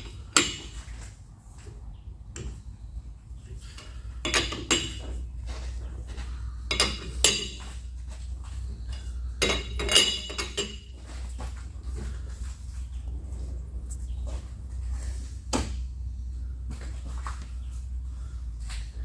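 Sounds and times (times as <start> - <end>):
steady low hum: 0.0 - 19.0
steel parts and tools clinking: 3.8 - 5.2, 6.7 - 7.8, 8.9 - 12.2.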